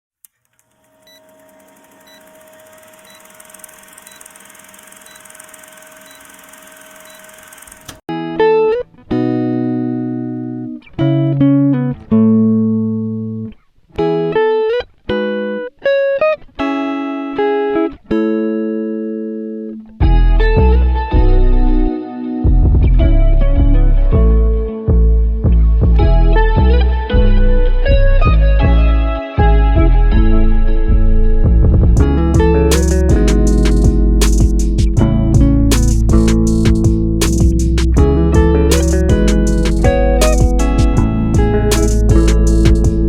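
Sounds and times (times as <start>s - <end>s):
low bass: 20.0s - 43.0s
plucked notes melody: 32.0s - 43.0s.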